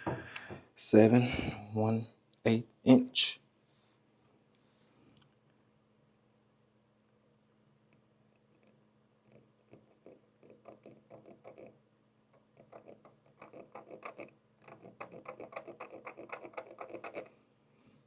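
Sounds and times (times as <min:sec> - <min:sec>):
marker scratching on metal tube: 0:09.7 - 0:11.8, 0:12.6 - 0:17.3.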